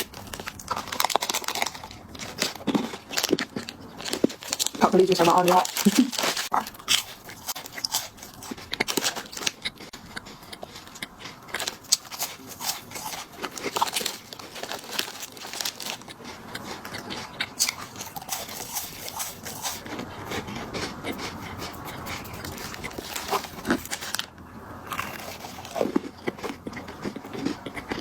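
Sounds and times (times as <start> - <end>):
plastic wrapper crinkling: 0.0 - 9.6, 11.6 - 16.1.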